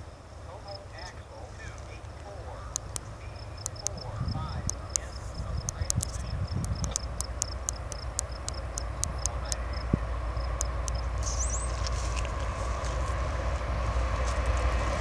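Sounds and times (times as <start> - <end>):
train rumbling: 0.0 - 15.0
high chirps: 2.7 - 12.0
rising high call: 7.0 - 15.0.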